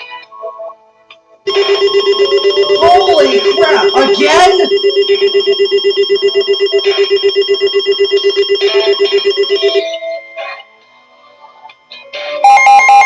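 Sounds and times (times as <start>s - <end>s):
fast-pulsing alarm beep: 1.5s - 9.8s.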